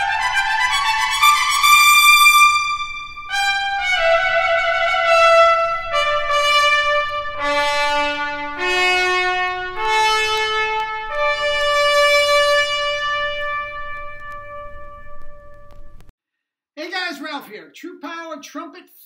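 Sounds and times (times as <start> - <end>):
solo trumpet playing held notes: 0.0 - 16.0.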